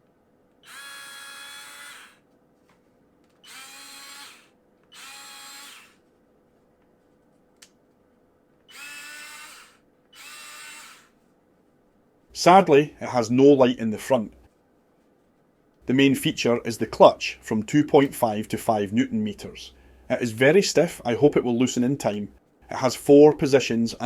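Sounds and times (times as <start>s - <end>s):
electric screwdriver motor whining: 0.6s - 2.2s, 3.4s - 6.0s, 8.7s - 11.2s.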